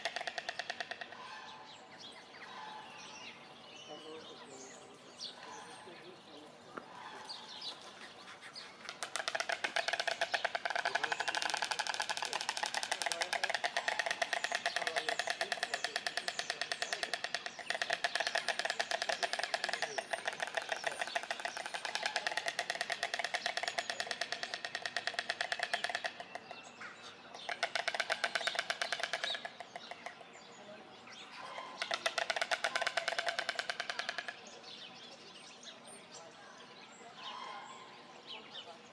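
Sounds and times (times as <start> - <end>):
storks clattering bills: 0.0 - 1.5, 6.8 - 26.6, 27.3 - 30.3, 31.4 - 34.6.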